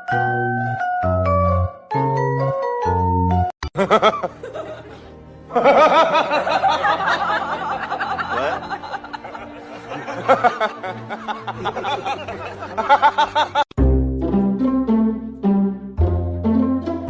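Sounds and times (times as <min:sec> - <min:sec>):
music: 0:00.0 - 0:17.0
giggling laughter: 0:03.8 - 0:13.7.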